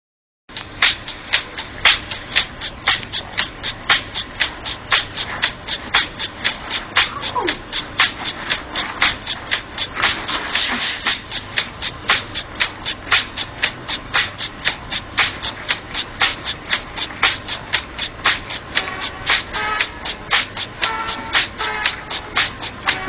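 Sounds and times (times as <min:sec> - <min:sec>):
rhythmic scraping strokes: 0:00.5 - 0:23.0.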